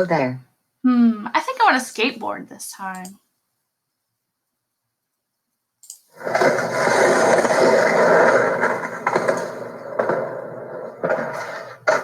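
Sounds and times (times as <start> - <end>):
skateboard sharp clacks: 6.2 - 12.0
skateboard wheels rolling on pavement: 6.2 - 12.0.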